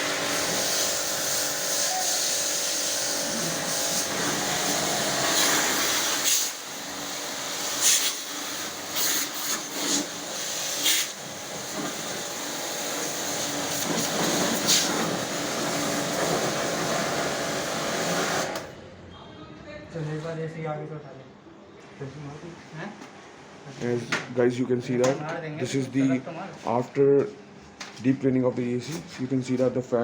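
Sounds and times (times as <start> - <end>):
pressure washer spraying water: 0.0 - 18.7.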